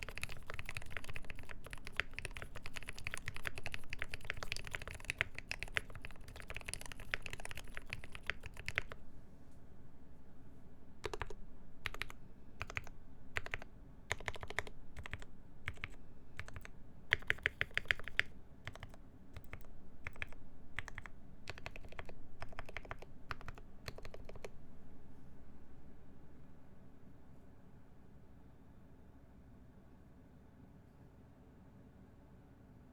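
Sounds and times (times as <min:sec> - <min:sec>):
mechanical keyboard typing: 0:00.0 - 0:09.0, 0:11.0 - 0:24.5.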